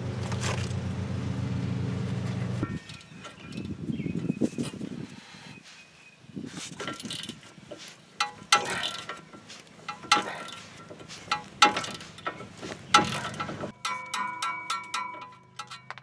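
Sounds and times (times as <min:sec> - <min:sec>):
wrench clanking on metal nut: 0:02.6 - 0:03.8, 0:06.6 - 0:16.0.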